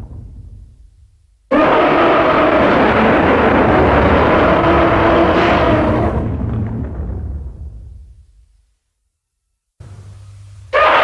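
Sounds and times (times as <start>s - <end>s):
rough monster roar: 1.5s - 6.8s.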